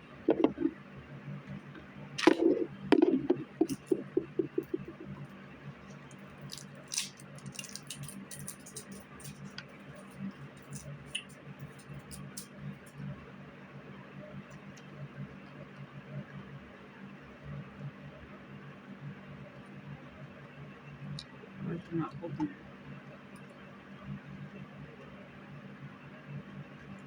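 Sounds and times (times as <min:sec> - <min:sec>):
steady low hum: 0:00.0 - 0:27.0
plastic items clicking and tapping: 0:00.3 - 0:00.7, 0:02.2 - 0:05.1.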